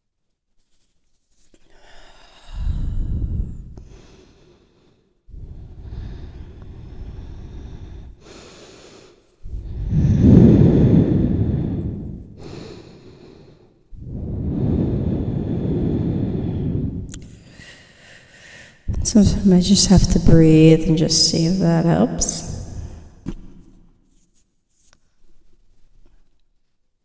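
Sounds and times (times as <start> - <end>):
person breathing through nose: 1.6 - 18.9.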